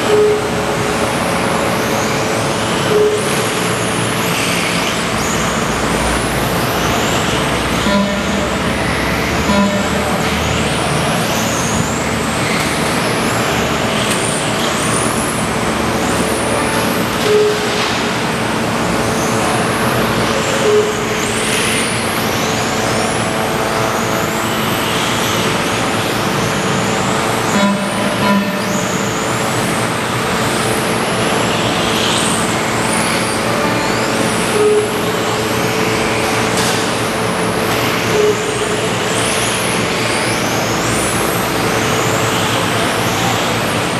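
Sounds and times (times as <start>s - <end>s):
short beeps: 0.0s - 0.6s, 2.8s - 3.6s, 9.5s - 10.1s, 17.2s - 17.8s, 20.6s - 21.2s, 27.5s - 28.9s, 34.5s - 35.2s
steady hum: 0.0s - 43.9s.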